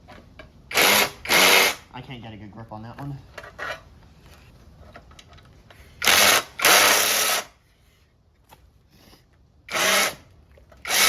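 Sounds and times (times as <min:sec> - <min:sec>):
cordless impact driver bursts: 0:00.7 - 0:01.9, 0:06.0 - 0:07.5, 0:09.7 - 0:11.0.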